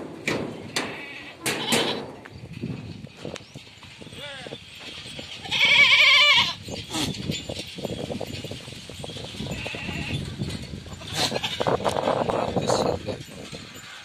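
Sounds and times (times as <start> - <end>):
herd shuffling and clicking: 0.0 - 14.0
goat bleating: 5.4 - 6.6, 11.0 - 11.8.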